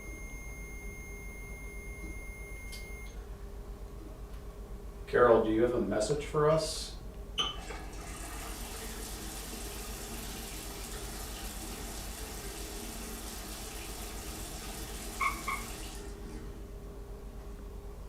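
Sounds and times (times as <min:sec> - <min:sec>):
low hum: 0:00.0 - 0:04.2.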